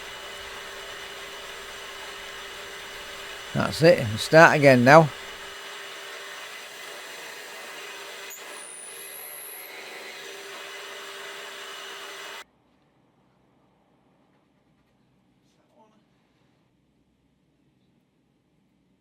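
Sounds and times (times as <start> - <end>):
drill press motor whining: 8.1 - 12.4.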